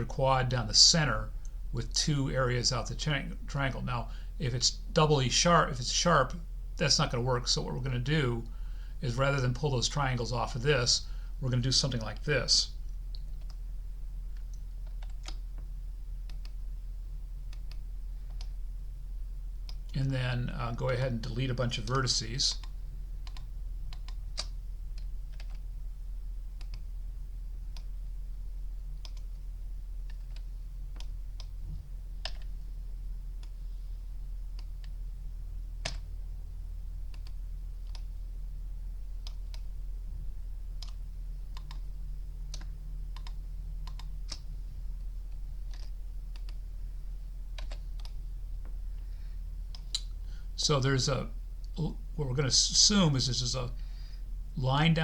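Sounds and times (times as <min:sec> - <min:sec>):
low hum: 0:00.0 - 0:55.0
keyboard and mouse clicks: 0:13.1 - 0:13.6, 0:14.3 - 0:16.6, 0:17.5 - 0:18.6, 0:22.6 - 0:25.6, 0:26.6 - 0:26.9, 0:29.0 - 0:31.6, 0:32.2 - 0:32.5, 0:35.8 - 0:36.1, 0:40.8 - 0:41.9, 0:42.5 - 0:44.5, 0:45.6 - 0:46.6, 0:47.6 - 0:48.2.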